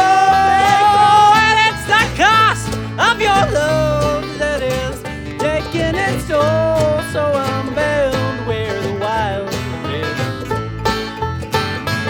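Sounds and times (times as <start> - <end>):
lead vocal singing: 0.0 - 10.3
banjo: 0.0 - 12.0
bass: 0.0 - 12.0
guitar: 0.0 - 12.0
mandolin: 0.0 - 12.0.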